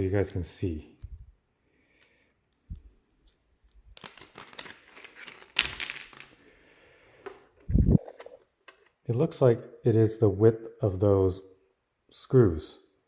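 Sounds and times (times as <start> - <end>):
plastic packaging crinkling: 3.9 - 6.3.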